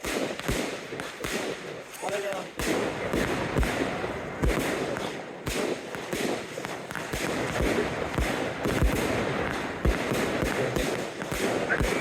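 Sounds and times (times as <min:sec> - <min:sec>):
fireworks booms and bangs: 0:00.0 - 0:12.0
fireworks crackling: 0:00.0 - 0:12.0.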